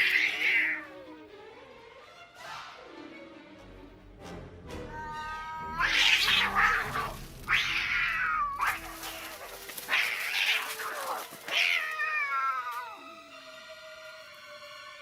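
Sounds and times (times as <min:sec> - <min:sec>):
cats yowling: 0:00.0 - 0:00.9, 0:05.0 - 0:13.1.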